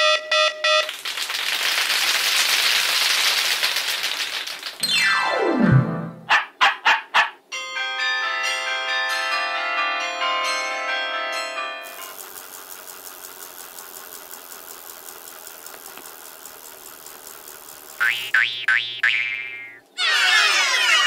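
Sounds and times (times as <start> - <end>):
bells ringing together: 7.5 - 12.1.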